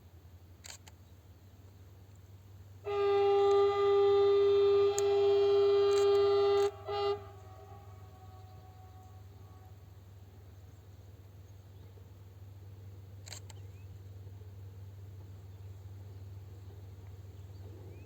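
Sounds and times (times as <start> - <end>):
rail vehicle horn blasts: 2.8 - 10.1.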